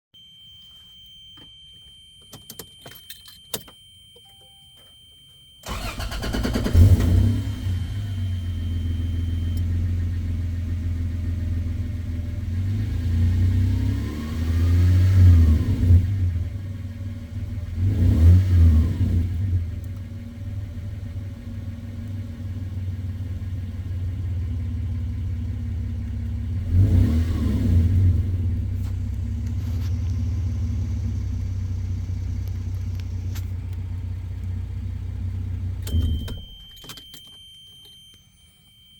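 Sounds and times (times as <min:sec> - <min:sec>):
car engine starting and idling: 0:05.6 - 0:38.9
engine revving: 0:05.7 - 0:32.8.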